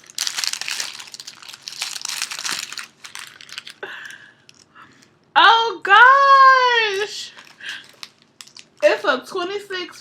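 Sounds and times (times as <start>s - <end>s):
gift wrapping crinkling: 0.0s - 4.7s, 6.9s - 9.1s.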